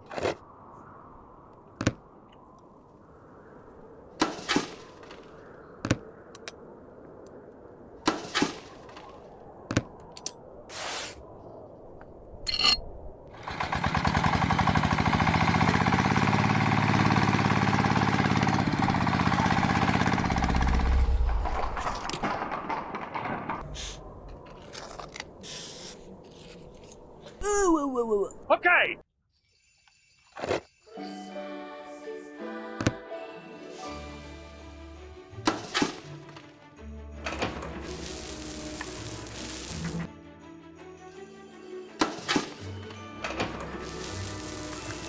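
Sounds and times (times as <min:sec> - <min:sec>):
small motor rattling: 0:43.4 - 0:45.0.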